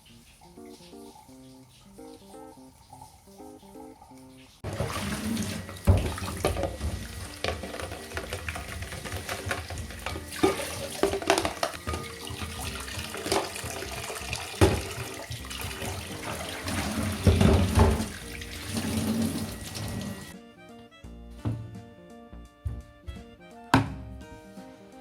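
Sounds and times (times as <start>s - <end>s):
tap water running into sink: 0.0s - 20.4s
items knocking and clattering: 4.6s - 19.4s, 22.7s - 24.1s.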